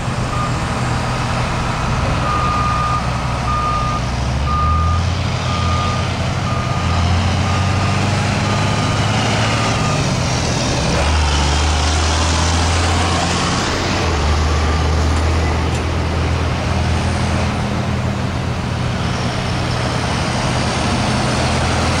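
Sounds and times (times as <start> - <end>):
vehicle engine running under load: 0.0 - 22.0
reversing alarm beeping: 0.3 - 0.7, 2.2 - 8.0, 9.4 - 10.1.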